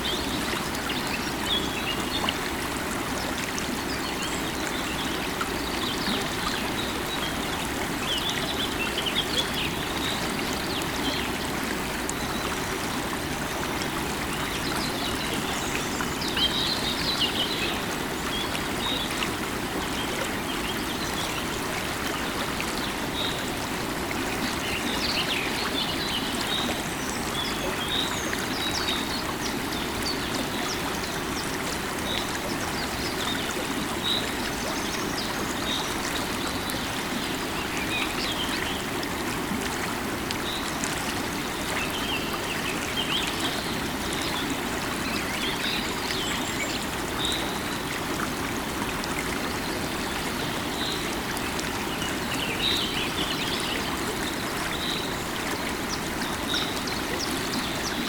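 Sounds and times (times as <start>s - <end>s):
river water running: 0.0s - 58.0s.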